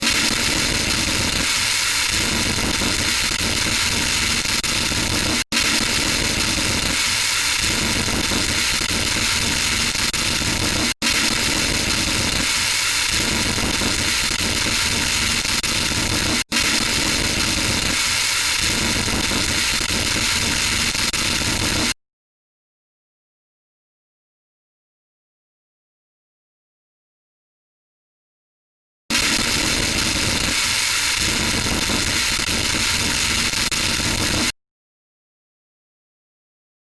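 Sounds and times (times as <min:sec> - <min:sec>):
harsh electronic static hiss: 0:00.0 - 0:22.0, 0:29.1 - 0:34.6.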